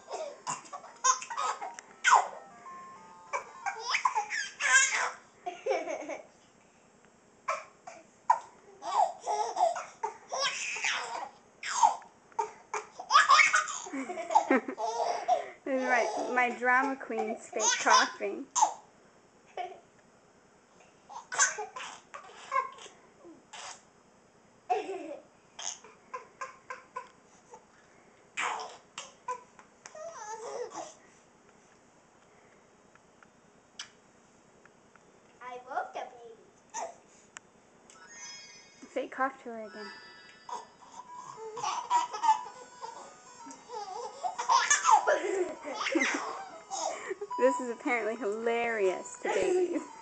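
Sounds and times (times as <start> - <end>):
baby laughing: 0.0 - 2.4, 3.3 - 6.3, 8.3 - 16.4, 17.3 - 18.8, 21.1 - 22.9, 24.7 - 27.1, 30.0 - 31.0, 40.5 - 47.4, 49.2 - 50.0.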